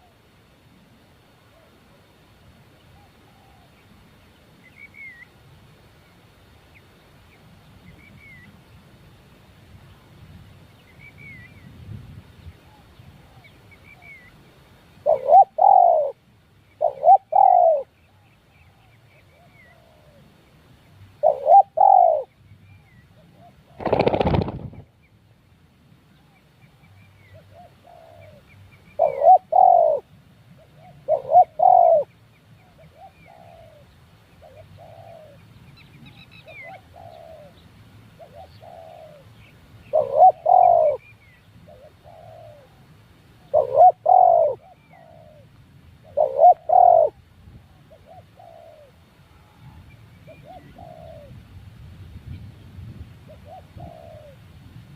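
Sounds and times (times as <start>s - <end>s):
doves cooing: 3.0s - 3.8s, 15.0s - 16.2s, 16.8s - 18.2s, 18.8s - 20.3s, 21.2s - 22.3s, 23.2s - 24.9s, 27.3s - 35.4s, 36.4s - 37.6s, 38.2s - 39.3s, 39.9s - 41.0s, 41.7s - 49.6s, 50.3s - 51.4s, 53.3s - 54.4s.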